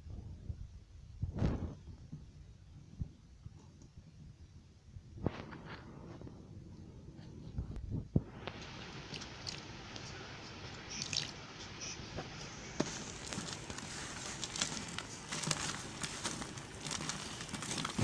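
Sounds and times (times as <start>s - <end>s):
crackly crunching clicks: 12.8s - 18.0s
hands squishing soft soap: 12.8s - 18.0s.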